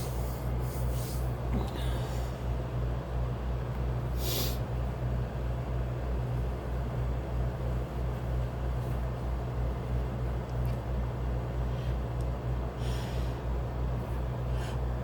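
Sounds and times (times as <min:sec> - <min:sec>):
steady low hum: 0:00.0 - 0:15.0
sharp sniff: 0:04.2 - 0:04.6.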